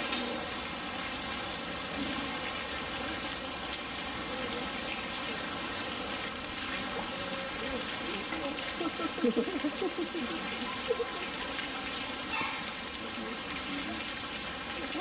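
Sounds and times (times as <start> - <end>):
running water rushing: 0.0 - 15.0
faint distant voices: 4.0 - 15.0.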